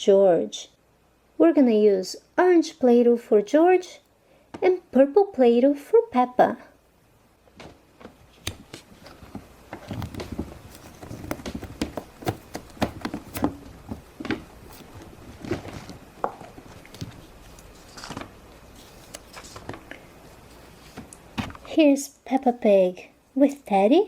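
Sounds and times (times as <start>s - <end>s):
plastic lids clicking and tapping: 8.5s - 14.4s
soft rubbing of dough: 13.2s - 21.1s.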